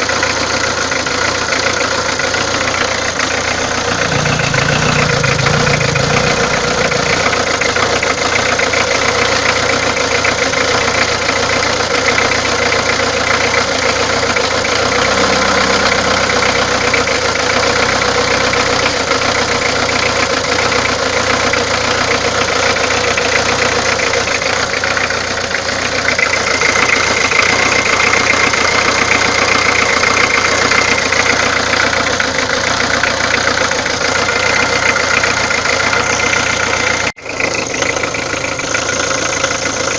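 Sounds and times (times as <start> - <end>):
diesel engine idling: 0.0 - 39.9
high whine: 3.6 - 8.8.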